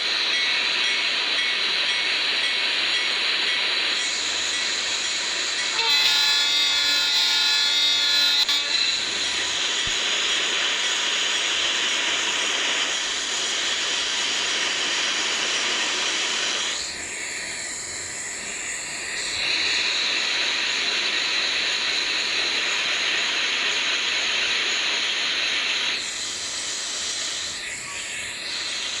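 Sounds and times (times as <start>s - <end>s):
freight train rolling past: 0.0s - 29.0s
train horn: 5.7s - 9.3s.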